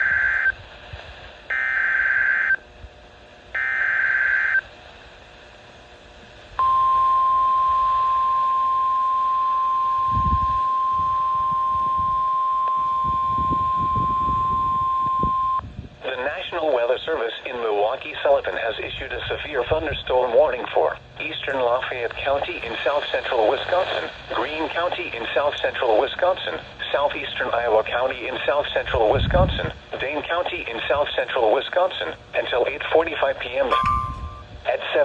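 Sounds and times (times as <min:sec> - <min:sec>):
steady warning alarm tone: 0:00.0 - 0:00.6, 0:01.5 - 0:02.6, 0:03.5 - 0:04.7, 0:06.6 - 0:15.6, 0:33.7 - 0:34.6.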